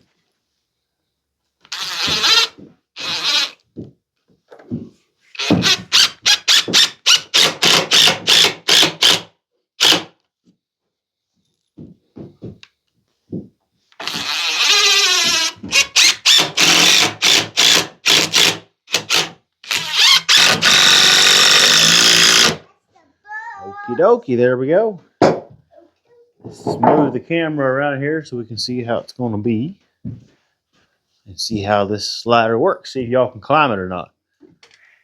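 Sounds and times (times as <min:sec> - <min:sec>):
power drill whining into wood: 0:01.7 - 0:03.6, 0:05.3 - 0:09.2, 0:14.0 - 0:22.6.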